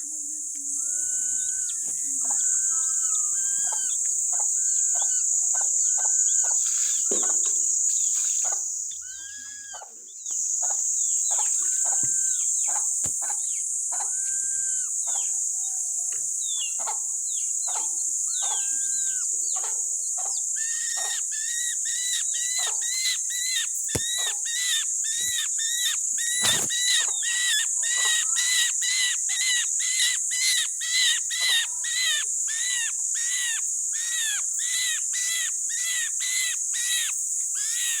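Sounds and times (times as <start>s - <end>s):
bird chirping: 16.4s - 38.0s.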